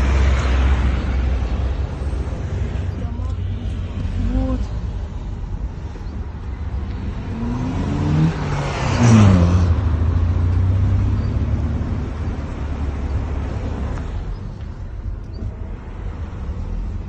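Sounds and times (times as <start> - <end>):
low traffic rumble: 0.0 - 17.0
tyre and road noise: 0.0 - 17.0
vehicle passing by: 6.9 - 14.2.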